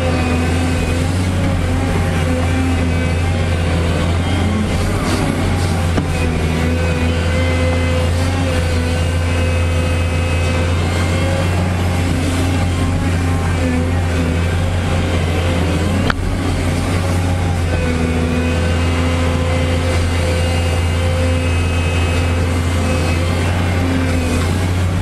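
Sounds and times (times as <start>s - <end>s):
diesel engine running under load: 0.0s - 25.0s.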